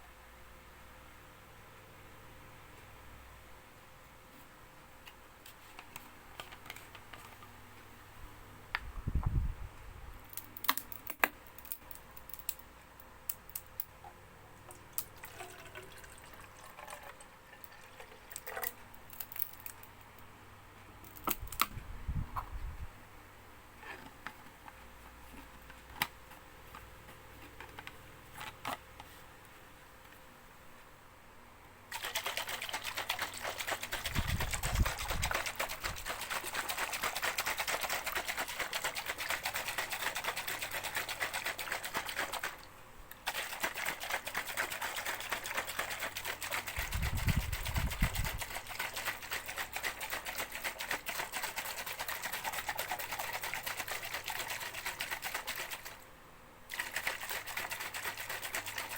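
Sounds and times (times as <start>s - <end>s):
shaker rattling: 31.9s - 56.0s, 56.7s - 58.9s.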